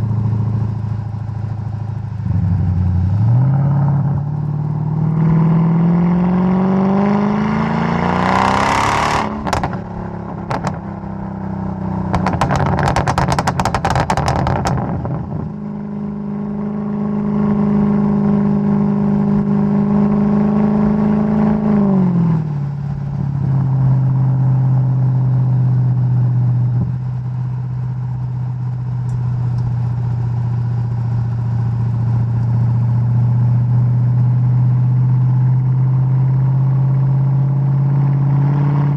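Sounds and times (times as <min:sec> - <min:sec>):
car engine revving: 0:02.2 - 0:27.0, 0:27.7 - 0:38.9
exhaust popping and crackling: 0:09.3 - 0:10.9, 0:12.0 - 0:15.6.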